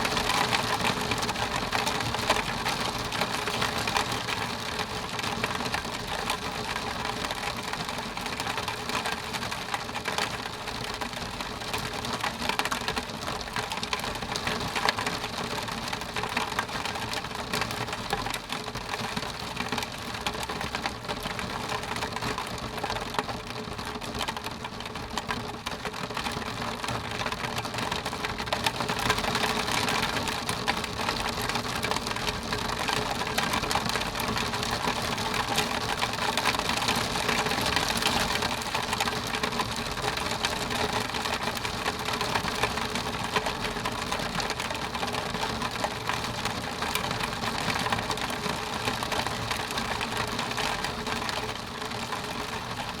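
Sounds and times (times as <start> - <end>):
rain on a window pane: 0.0 - 53.0.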